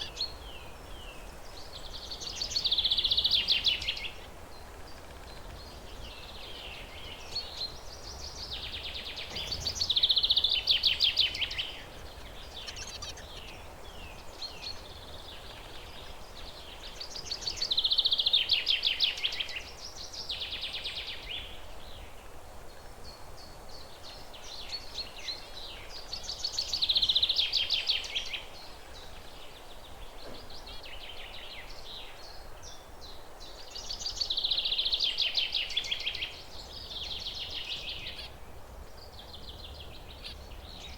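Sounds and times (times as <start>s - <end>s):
soft bird chirps: 0.0s - 22.0s
faint background hiss: 0.0s - 40.9s
finch buzzy song: 7.5s - 15.6s.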